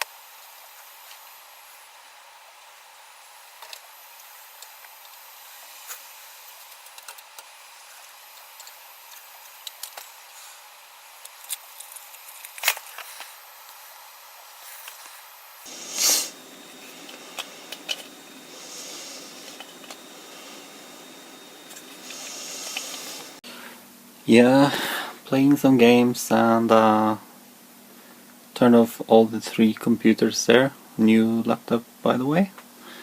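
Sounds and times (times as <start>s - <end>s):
faint steady hiss: 0.0s - 33.0s
scrape or rustle: 14.5s - 16.4s.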